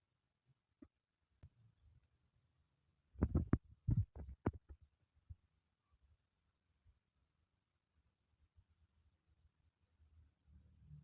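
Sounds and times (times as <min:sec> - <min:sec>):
soft low thumps and knocks: 0:03.2 - 0:04.7.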